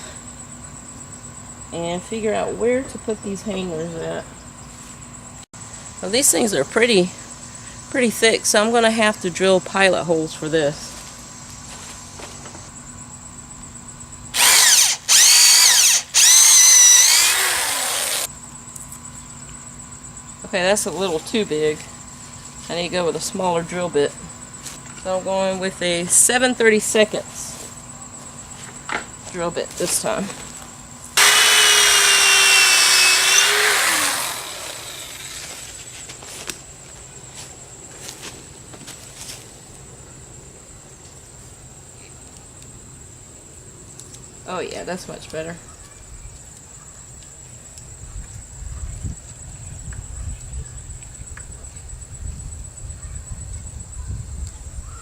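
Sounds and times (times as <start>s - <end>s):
power drill boring into wood: 14.4s - 18.3s, 31.2s - 35.4s.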